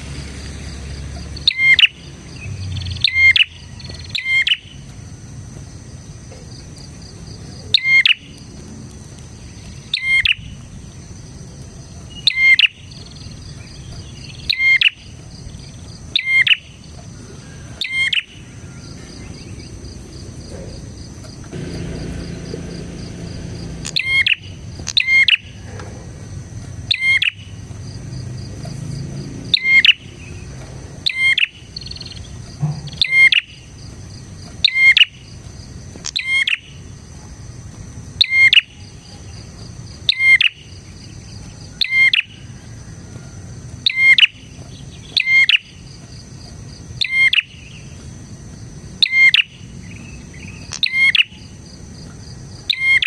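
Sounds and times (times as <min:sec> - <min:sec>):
bird calling sharp notes: 0:01.3 - 0:04.8, 0:21.5 - 0:25.6, 0:29.5 - 0:30.1, 0:31.0 - 0:33.7.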